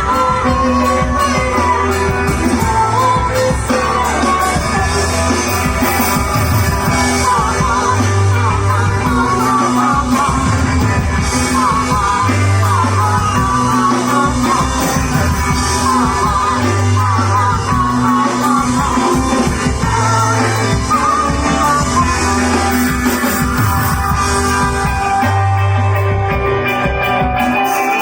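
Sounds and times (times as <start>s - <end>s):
live rock band playing: 0.0s - 28.0s
person singing: 0.0s - 28.0s
sustained bass notes: 0.0s - 28.0s.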